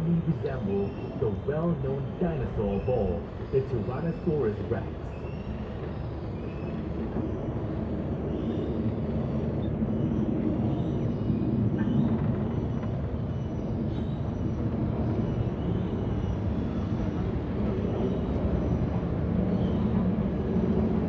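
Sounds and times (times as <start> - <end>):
tram rumbling: 0.0 - 6.1.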